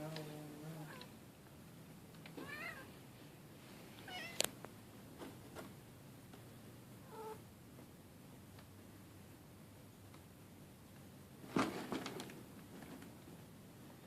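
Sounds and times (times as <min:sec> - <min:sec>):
cat meowing: 0:02.4 - 0:02.9, 0:04.0 - 0:04.5, 0:07.1 - 0:07.4.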